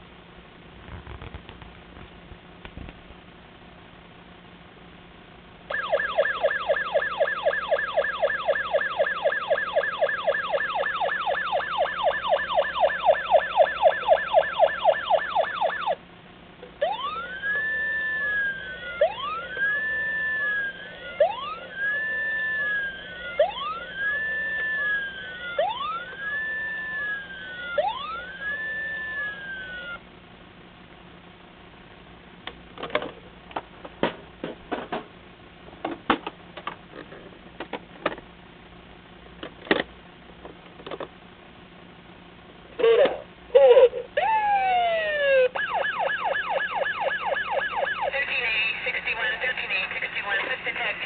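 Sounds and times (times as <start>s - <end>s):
toy siren wail: 5.7s - 16.0s, 16.8s - 30.0s, 42.8s - 48.1s
toy siren yelp: 5.7s - 16.0s, 16.8s - 30.0s, 42.8s - 48.1s.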